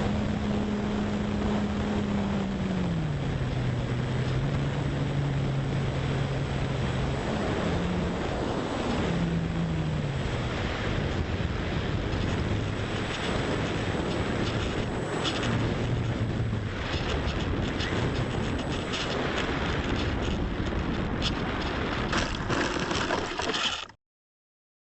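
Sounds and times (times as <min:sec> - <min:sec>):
wind buffeting microphone: 0:00.0 - 0:23.2
model airplane motor drone: 0:00.0 - 0:23.9
crackles: 0:12.1 - 0:24.0.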